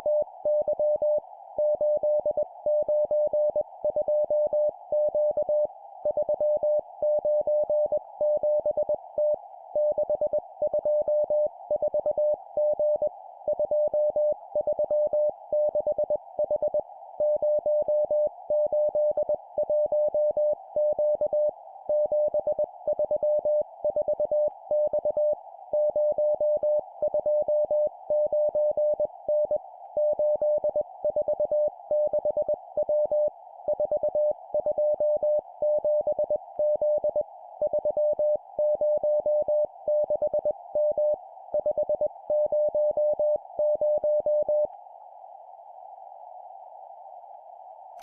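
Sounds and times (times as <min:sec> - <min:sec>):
morse code beep tone: 0:00.0 - 0:44.7.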